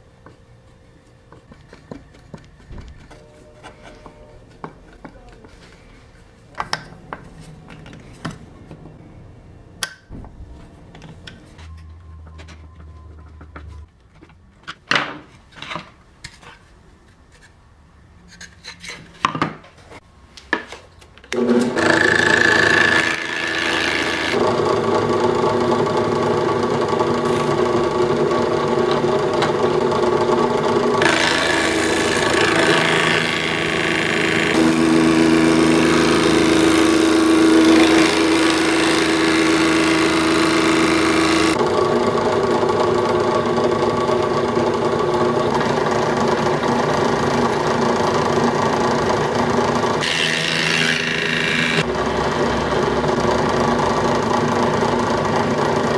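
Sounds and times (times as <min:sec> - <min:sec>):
drill press running: 0:21.3 - 0:55.9
planer cutting wood: 0:21.3 - 0:55.9.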